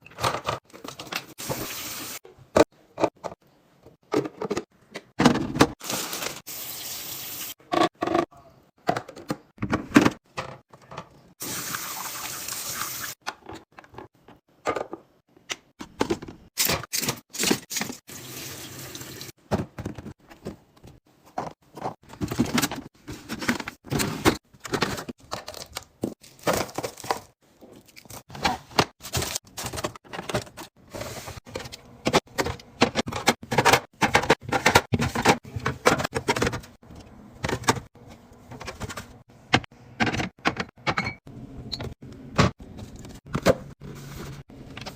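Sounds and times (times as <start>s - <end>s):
running tap water: 6.5s - 7.5s, 11.4s - 13.2s, 18.1s - 19.3s.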